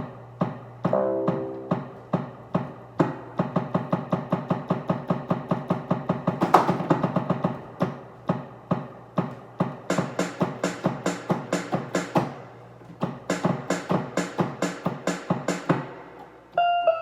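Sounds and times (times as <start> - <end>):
music with sharp percussive hits: 0.4 - 16.3
held note: 0.9 - 2.0.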